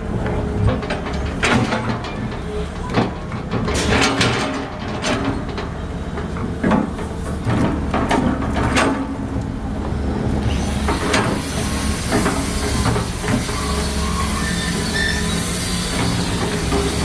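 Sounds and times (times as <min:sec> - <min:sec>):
excavator engine humming: 0:00.0 - 0:17.0
metallic clanks and knocks: 0:00.2 - 0:09.2.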